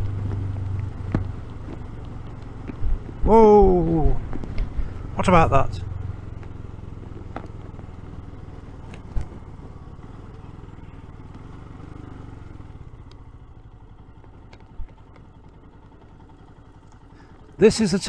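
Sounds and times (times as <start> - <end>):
motorcycle engine running: 0.0 - 18.0.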